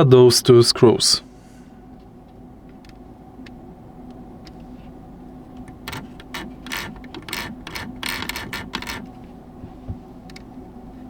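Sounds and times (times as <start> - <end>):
screwdriver scraping clicks: 5.9 - 9.0.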